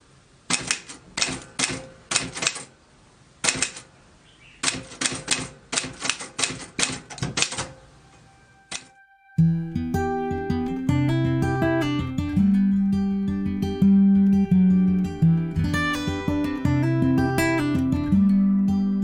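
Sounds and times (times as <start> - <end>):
typewriter keys clacking: 4.6 - 7.7.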